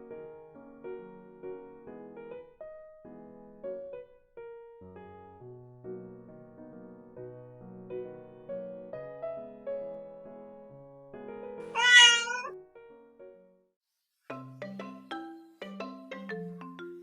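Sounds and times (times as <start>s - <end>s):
gentle piano melody: 0.0s - 13.5s.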